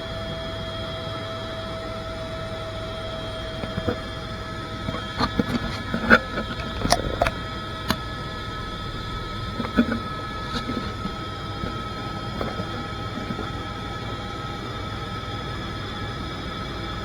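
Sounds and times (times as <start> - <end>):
helicopter cabin drone: 0.0 - 17.0
sharp clicks and knocks: 5.2 - 8.0.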